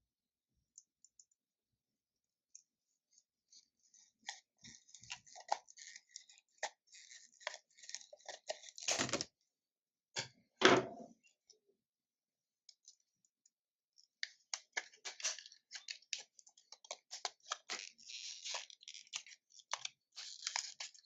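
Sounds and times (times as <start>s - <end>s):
packaging crinkling and crackling: 4.3s - 9.3s, 14.2s - 21.0s.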